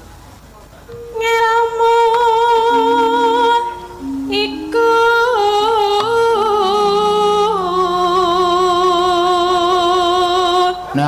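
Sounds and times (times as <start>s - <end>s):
low sustained accompanying note: 0.9s - 10.9s.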